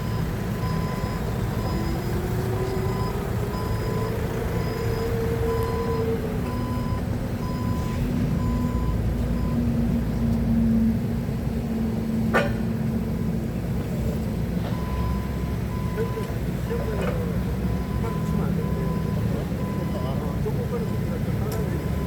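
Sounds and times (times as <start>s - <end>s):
forklift engine running: 0.0s - 22.0s
warning alarm beeping: 17.7s - 22.0s.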